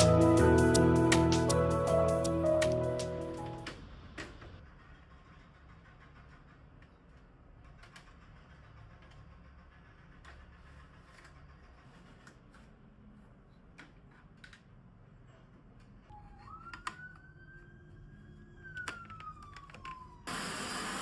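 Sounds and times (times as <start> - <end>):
vacuum cleaner running: 20.3 - 21.0.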